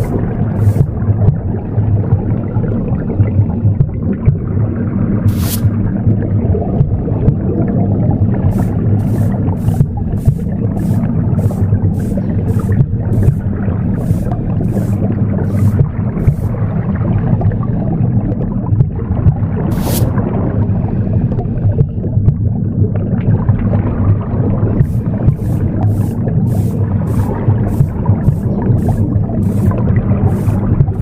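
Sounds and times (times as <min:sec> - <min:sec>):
broom sweeping: 0:00.0 - 0:00.9, 0:05.3 - 0:05.8, 0:08.5 - 0:16.6, 0:19.7 - 0:20.2, 0:24.8 - 0:31.0
low rumbling womb sound: 0:00.0 - 0:31.0.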